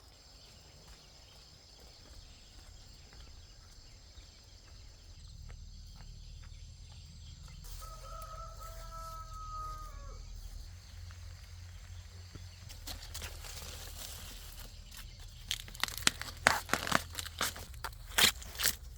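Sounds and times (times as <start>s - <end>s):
rooster crowing: 7.2s - 10.9s.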